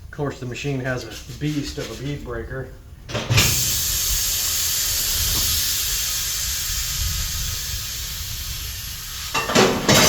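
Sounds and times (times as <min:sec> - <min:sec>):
compressed air hissing: 0:03.3 - 0:10.0.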